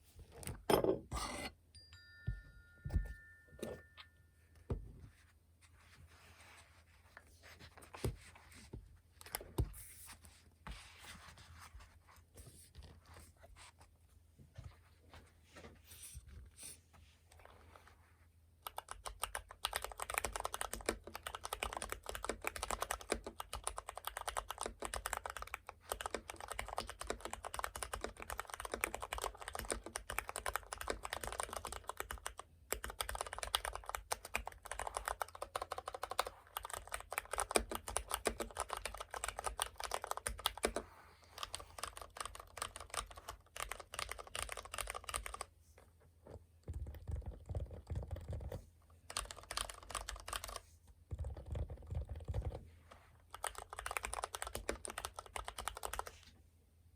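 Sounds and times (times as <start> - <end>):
typing on computer keyboard: 18.6 - 45.5, 46.6 - 52.6, 53.3 - 56.2.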